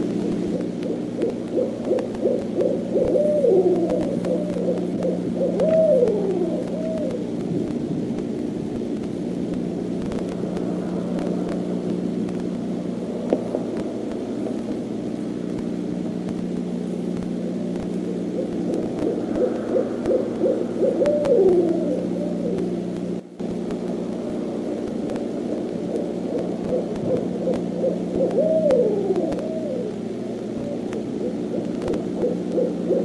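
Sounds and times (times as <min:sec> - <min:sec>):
owls hooting: 0:00.0 - 0:07.8, 0:17.8 - 0:23.0, 0:24.2 - 0:33.0
low electrical hum: 0:00.0 - 0:33.0.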